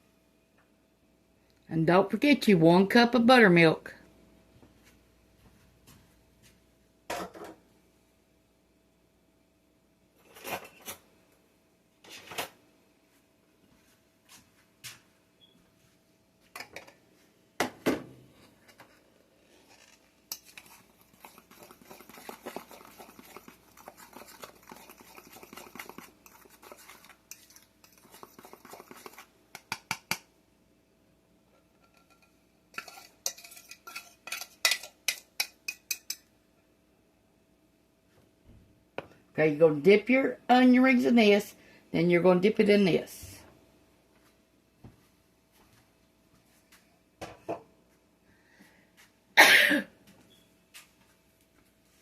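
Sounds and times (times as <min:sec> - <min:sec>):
batter stirring: 0:18.6 - 0:30.2, 0:31.8 - 0:36.2
utensil clinking against bowl: 0:31.8 - 0:36.2.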